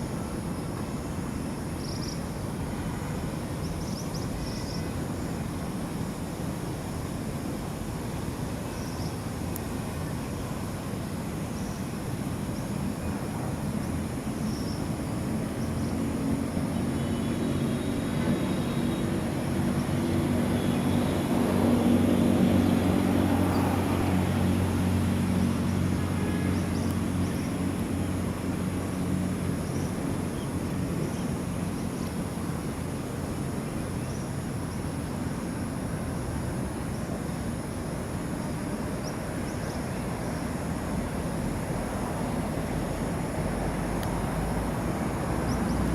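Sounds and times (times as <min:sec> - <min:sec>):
distant engine passing by: 0:15.6 - 0:31.9.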